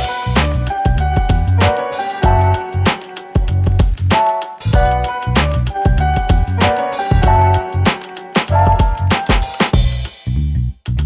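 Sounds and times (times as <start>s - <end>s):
crisp percussion hits: 0.4s - 10.0s
kick drum: 0.8s - 1.6s, 3.4s - 4.0s, 4.8s - 5.0s, 5.8s - 7.4s, 8.6s - 9.9s.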